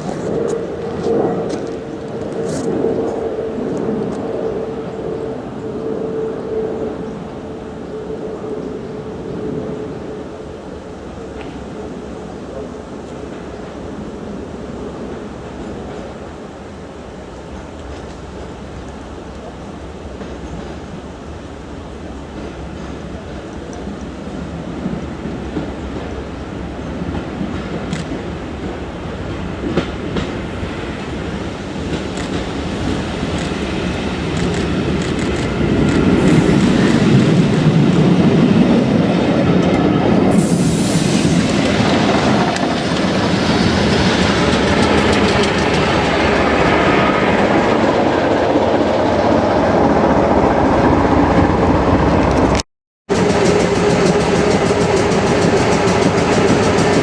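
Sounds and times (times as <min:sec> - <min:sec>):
diesel train engine droning: 0:06.4 - 0:57.0
train wheel clicks on rails: 0:17.5 - 0:19.6, 0:22.2 - 0:38.5, 0:41.2 - 0:47.9, 0:52.2 - 0:57.0
wheels clacking on rail joints: 0:41.5 - 0:48.2, 0:52.2 - 0:57.0.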